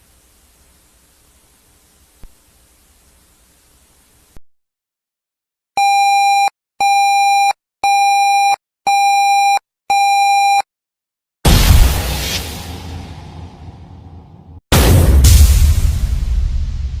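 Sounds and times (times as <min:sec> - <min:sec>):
loud blast of noise: 0:11.5 - 0:17.0.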